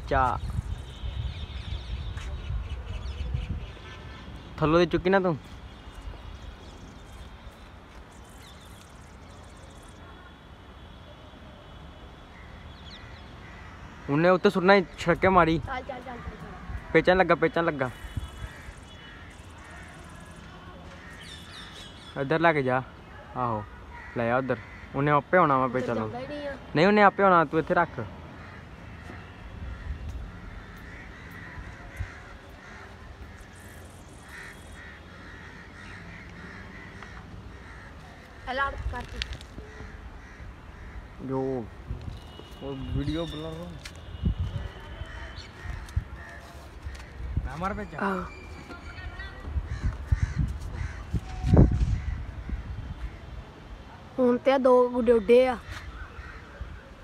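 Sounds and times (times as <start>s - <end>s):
wind noise on microphone: 0.0s - 4.2s, 17.9s - 19.0s, 41.7s - 47.8s, 48.4s - 53.4s
crows cawing: 12.3s - 14.2s, 23.9s - 25.2s, 28.3s - 39.0s, 39.6s - 41.5s, 49.7s - 51.2s, 55.6s - 56.7s.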